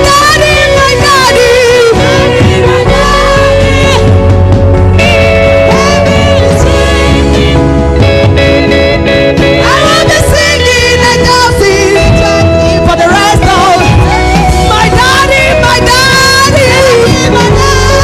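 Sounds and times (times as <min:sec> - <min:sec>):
person singing: 0:00.0 - 0:04.2, 0:05.0 - 0:08.7
steady bass: 0:00.0 - 0:18.0
sustained instrumental chords: 0:00.0 - 0:18.0.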